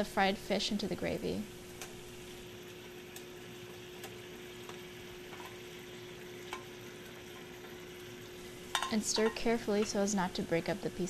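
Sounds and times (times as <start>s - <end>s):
faint steady hum: 0.0s - 11.0s
gravy sizzling in a pan: 0.0s - 11.0s
utensil clicking against pan: 8.7s - 10.1s.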